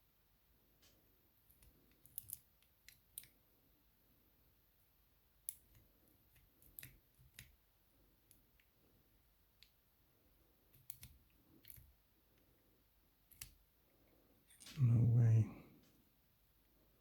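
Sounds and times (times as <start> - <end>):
faint metal clicks and taps: 5.5 - 7.6, 10.7 - 12.5.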